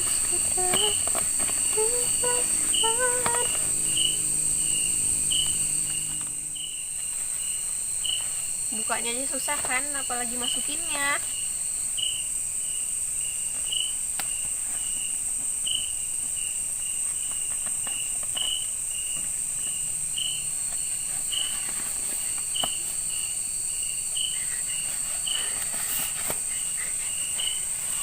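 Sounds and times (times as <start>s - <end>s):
handling rustles and clicks: 0.0s - 3.6s
high-pitched insect drone: 0.0s - 14.0s, 17.8s - 28.0s
insect chirps: 0.0s - 28.0s.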